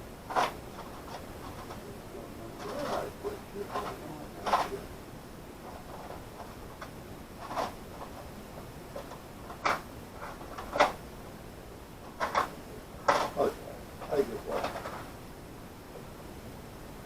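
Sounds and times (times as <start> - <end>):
small parts clicking and rattling: 12.1 - 13.4.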